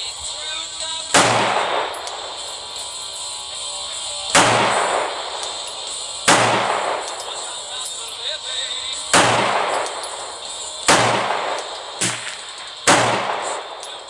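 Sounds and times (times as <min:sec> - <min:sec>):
pistol shots with echo: 0:01.0 - 0:03.0, 0:04.2 - 0:08.1, 0:08.9 - 0:14.0.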